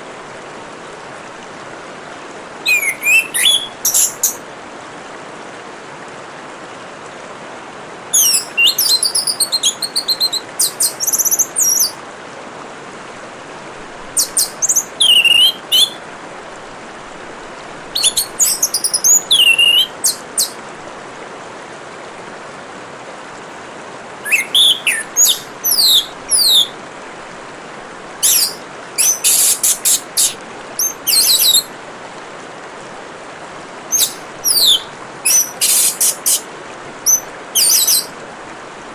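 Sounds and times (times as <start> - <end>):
trickle of running water: 0.0 - 38.9
thrush singing whistled phrases: 2.6 - 4.4, 8.1 - 12.0, 14.2 - 16.0, 18.0 - 20.6, 24.2 - 26.8, 28.2 - 31.7, 33.9 - 38.1.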